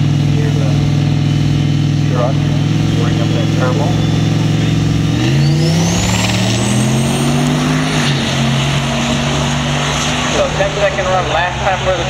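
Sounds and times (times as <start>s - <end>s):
truck engine revving: 0.0s - 12.0s.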